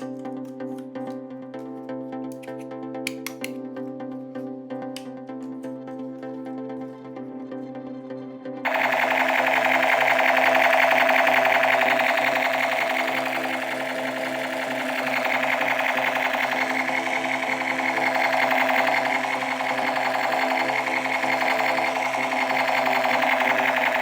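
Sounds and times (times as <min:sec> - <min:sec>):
simple electronic tune: 0:08.7 - 0:24.0
toy mechanical rattle: 0:08.7 - 0:24.0.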